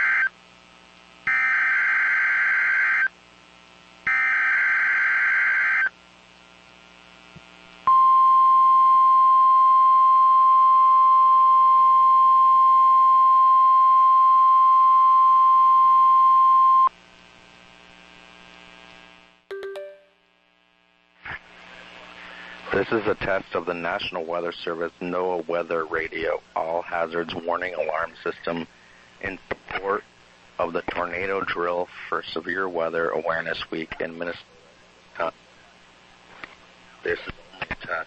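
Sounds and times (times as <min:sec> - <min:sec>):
steady single-pitch alarm tone: 0:01.3 - 0:03.1, 0:04.1 - 0:05.9.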